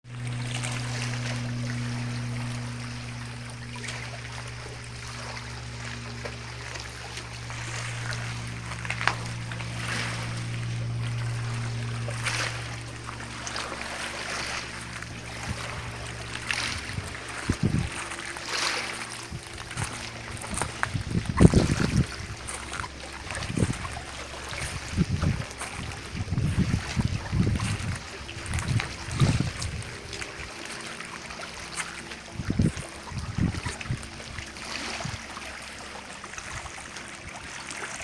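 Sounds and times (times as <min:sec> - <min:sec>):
low motor hum: 0:00.0 - 0:38.0
water splashing against boat: 0:00.0 - 0:38.0.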